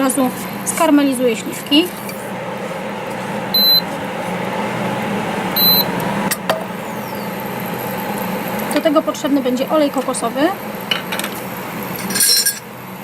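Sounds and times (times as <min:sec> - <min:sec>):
steady hum: 0:00.0 - 0:13.0
short high electronic beeps: 0:03.6 - 0:03.8, 0:05.6 - 0:05.8.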